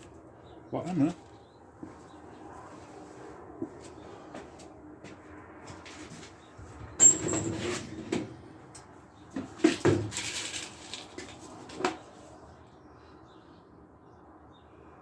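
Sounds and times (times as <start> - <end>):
sharp metallic clink: 7.0 - 7.7.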